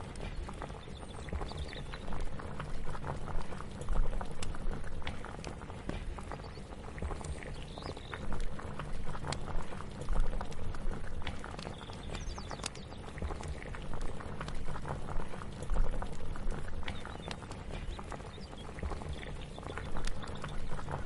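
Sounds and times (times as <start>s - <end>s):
food crackling on a stove: 0.0s - 21.0s.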